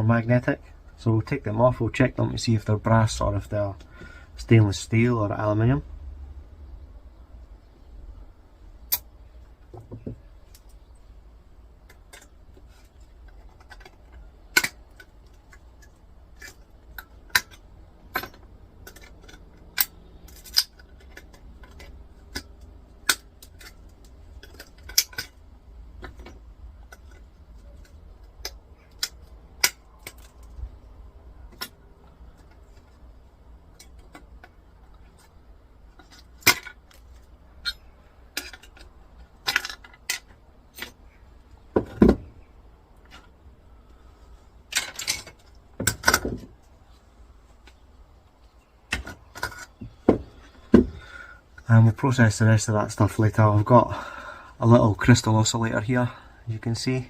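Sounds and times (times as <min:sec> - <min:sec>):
metallic clicks of small parts: 0:08.8 - 0:09.1, 0:11.8 - 0:41.1, 0:44.7 - 0:46.4.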